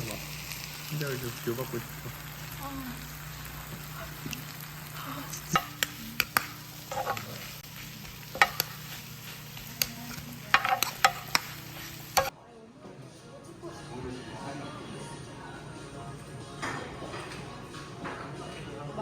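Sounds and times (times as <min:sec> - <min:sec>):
food sizzling: 0:00.0 - 0:12.3
utensils clinking against dishes: 0:05.0 - 0:12.3, 0:16.6 - 0:18.6.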